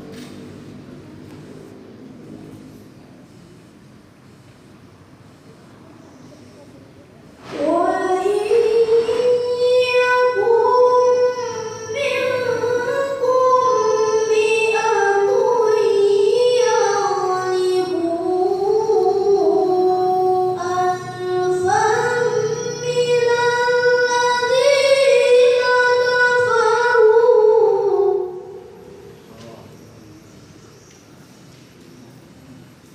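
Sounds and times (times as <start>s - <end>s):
child reciting melodically: 7.4s - 29.1s.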